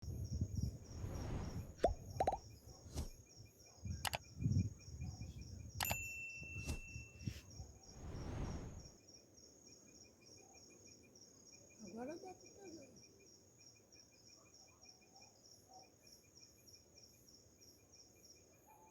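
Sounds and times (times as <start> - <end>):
insects chirping: 0.0 - 18.9
sharp clicks: 4.0 - 4.3, 5.8 - 6.0.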